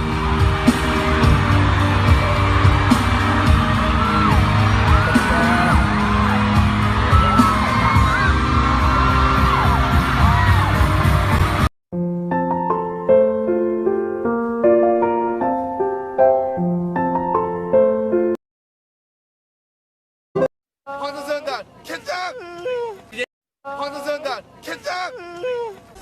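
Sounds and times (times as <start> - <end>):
loud busy music: 0.0 - 11.7
piano notes: 12.0 - 18.4.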